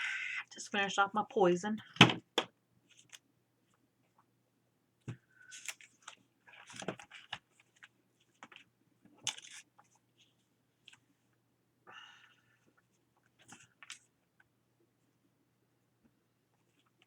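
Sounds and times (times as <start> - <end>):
paper crinkling and rustling: 2.8 - 3.2, 5.4 - 11.1.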